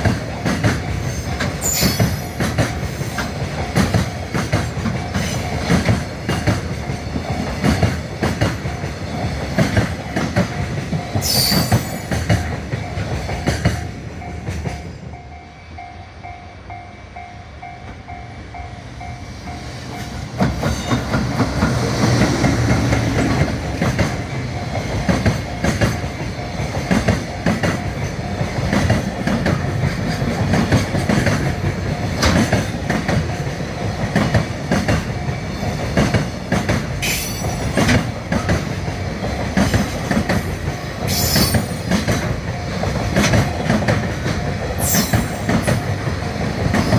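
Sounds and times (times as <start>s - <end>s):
train wheels clacking on rails: 0.0s - 46.9s.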